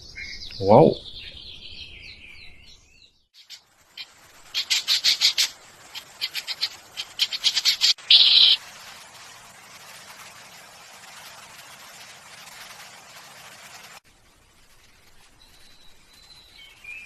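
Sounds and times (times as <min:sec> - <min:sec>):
bird chirping: 0:00.0 - 0:08.6
harsh buzzy bird call: 0:03.4 - 0:08.6.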